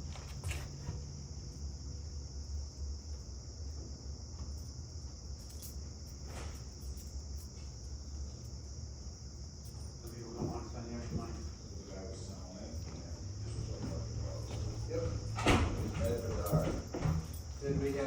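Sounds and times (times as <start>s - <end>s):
insects chorus: 0.0s - 18.0s.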